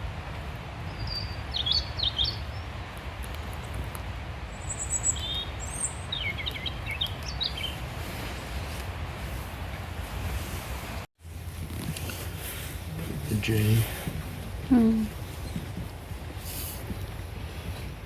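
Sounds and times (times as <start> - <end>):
small songbirds chirping: 0.8 - 8.0.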